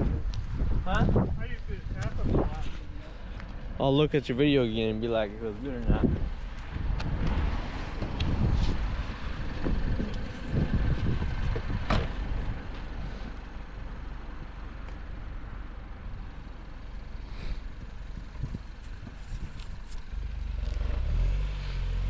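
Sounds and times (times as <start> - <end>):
car engine running: 4.8 - 21.0.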